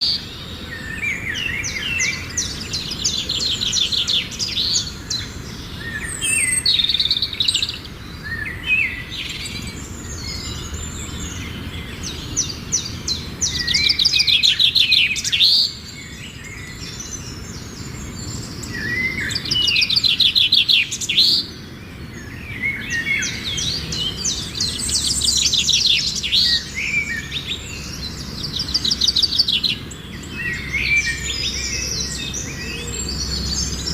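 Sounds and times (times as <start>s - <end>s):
songbirds trilling: 0.0s - 33.9s.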